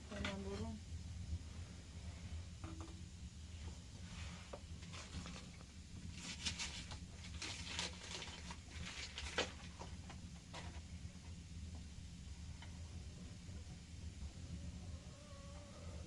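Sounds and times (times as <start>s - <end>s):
steady low hum: 0.0s - 16.0s
rustling and scraping: 2.0s - 11.4s.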